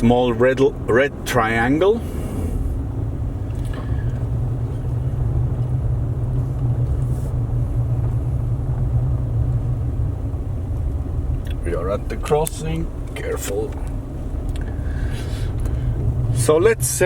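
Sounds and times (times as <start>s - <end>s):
car engine and road rumble: 0.0s - 17.0s.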